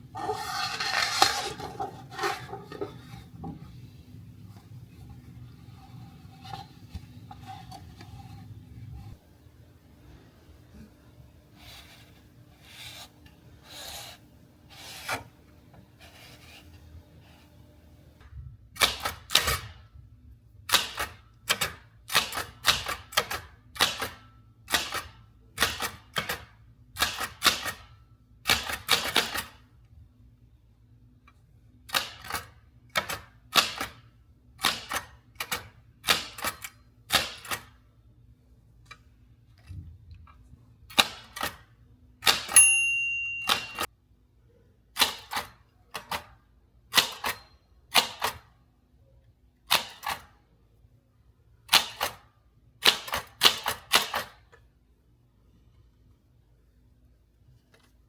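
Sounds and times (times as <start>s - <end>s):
typewriter keys striking: 43.4s - 43.9s.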